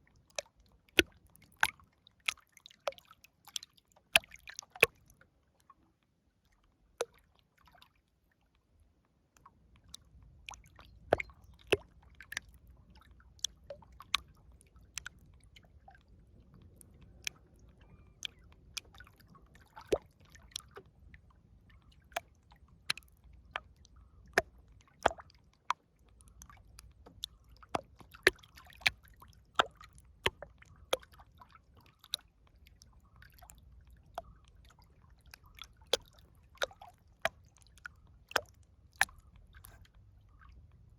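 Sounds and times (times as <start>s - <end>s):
water lapping and splashing: 0.0s - 40.9s
faint low rumble: 8.4s - 40.9s.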